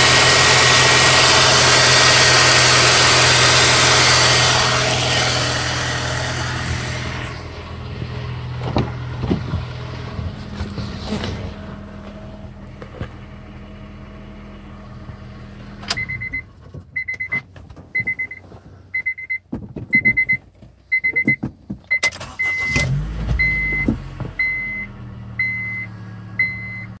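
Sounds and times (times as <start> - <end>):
car engine running: 0.0 - 27.0
car warning chime beeping: 15.9 - 18.4, 19.0 - 27.0.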